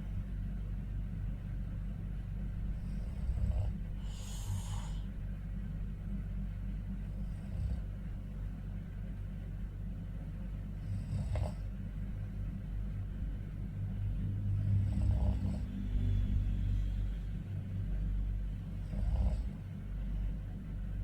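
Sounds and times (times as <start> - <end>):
steady low hum: 0.0 - 21.0
man snoring: 2.7 - 5.1, 7.1 - 7.9, 10.8 - 11.6, 14.5 - 15.8, 18.8 - 19.6.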